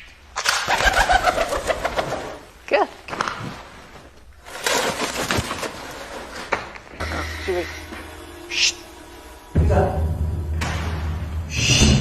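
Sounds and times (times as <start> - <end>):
bird wings flapping: 0.4 - 2.4.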